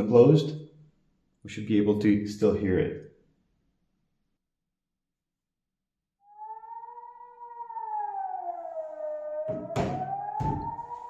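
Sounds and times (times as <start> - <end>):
civil defence siren wailing: 6.2 - 11.0.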